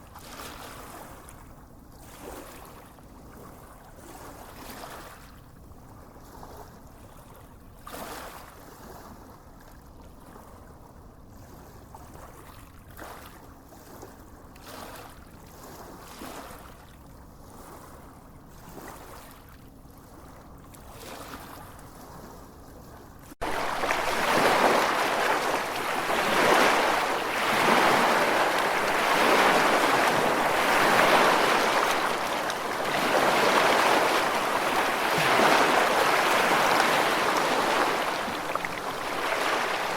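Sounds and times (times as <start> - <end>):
loud surf: 23.4 - 39.9
waves washing onto beach: 23.4 - 39.9.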